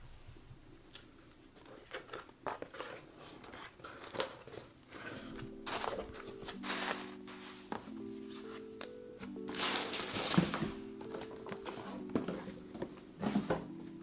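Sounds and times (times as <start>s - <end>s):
packaging rustling and scraping: 1.4s - 14.0s
soft music: 5.0s - 14.0s.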